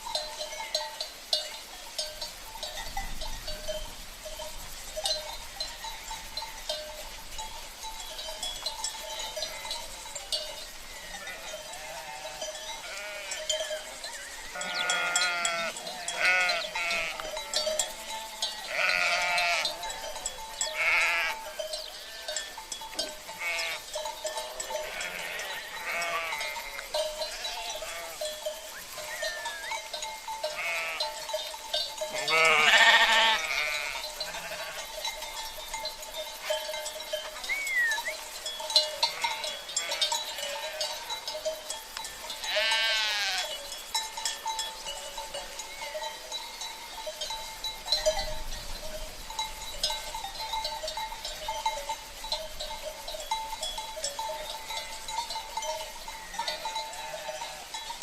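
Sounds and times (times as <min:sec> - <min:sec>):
cowbells ringing and clinking: 0:00.0 - 0:58.0
sheep bleating: 0:11.1 - 0:13.6, 0:14.5 - 0:17.6, 0:18.7 - 0:20.0, 0:20.7 - 0:22.5, 0:23.4 - 0:23.8, 0:24.4 - 0:28.3, 0:29.0 - 0:29.8, 0:30.5 - 0:31.2, 0:32.1 - 0:34.9, 0:39.0 - 0:41.0, 0:42.4 - 0:43.5.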